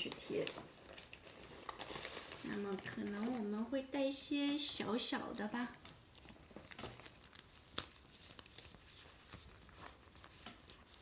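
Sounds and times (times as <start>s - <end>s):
paper rustling: 0.0s - 3.6s, 5.8s - 11.0s.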